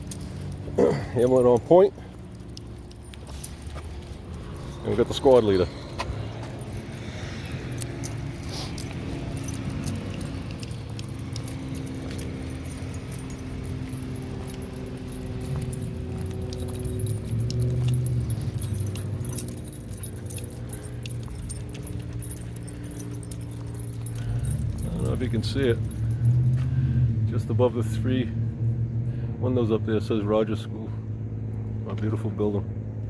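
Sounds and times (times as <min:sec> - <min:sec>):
metal leash clips and dog tags jingling: 0:00.0 - 0:28.2
vehicle engine humming: 0:00.0 - 0:33.0.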